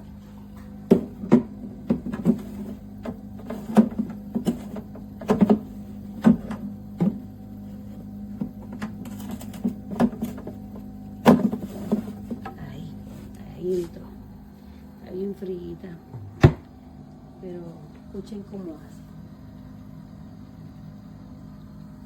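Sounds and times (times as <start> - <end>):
fridge compressor hum: 0.0 - 22.0
plastic knocks and clunks: 0.9 - 7.3, 8.4 - 12.6, 16.2 - 16.8.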